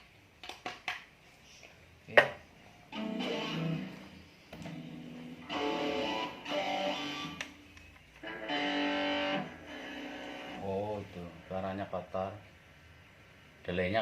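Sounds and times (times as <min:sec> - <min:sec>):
electric guitar chords strummed: 0:03.0 - 0:04.0.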